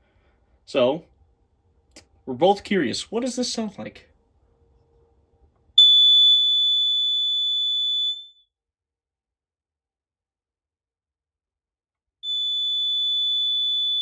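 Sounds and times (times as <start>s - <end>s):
high-pitched smoke alarm tone: 5.8s - 8.5s, 12.2s - 14.0s.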